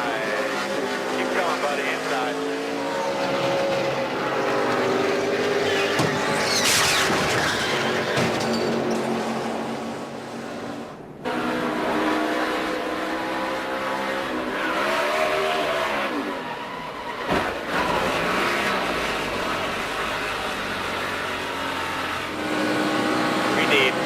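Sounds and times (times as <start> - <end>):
race car engine droning: 8.8 - 24.0.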